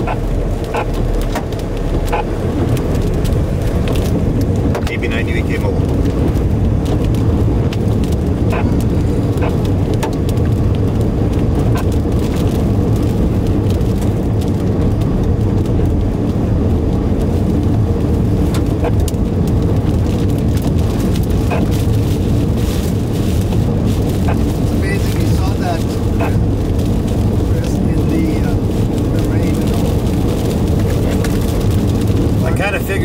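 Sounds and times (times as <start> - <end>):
car road and engine rumble: 0.0 - 33.0.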